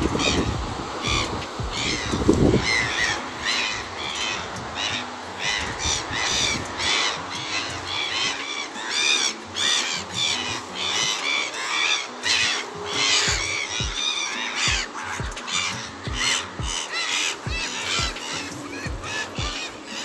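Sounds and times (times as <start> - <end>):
birds calling: 0.0 - 20.0.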